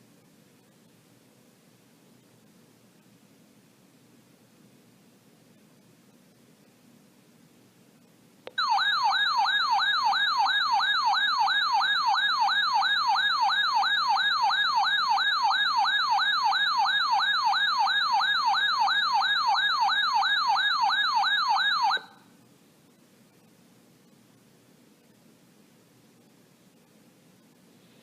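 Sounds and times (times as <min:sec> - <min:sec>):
electronic warbling alert siren: 0:08.6 - 0:22.2.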